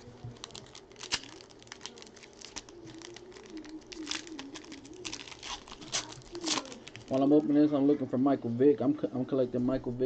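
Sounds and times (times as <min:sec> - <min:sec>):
foil card pack crinkling: 0:00.0 - 0:07.5.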